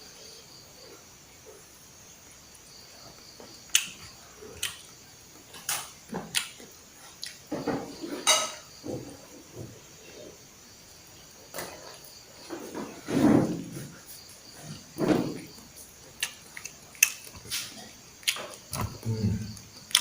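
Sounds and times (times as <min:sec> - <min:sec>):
soft eating sounds: 0:00.2 - 0:10.4, 0:13.9 - 0:20.0
cutlery clinking on a plate: 0:07.6 - 0:08.7.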